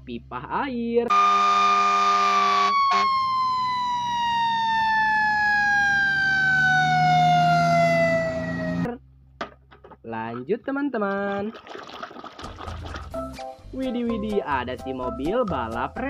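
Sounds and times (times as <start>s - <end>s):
mechanical siren winding down: 1.1s - 9.0s.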